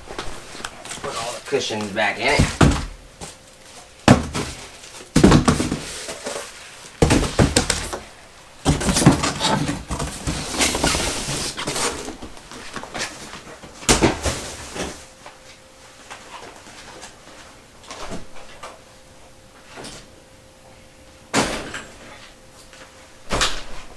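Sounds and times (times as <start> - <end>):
foam thumping into cardboard box: 2.3 - 3.4, 4.0 - 12.2, 13.8 - 15.1.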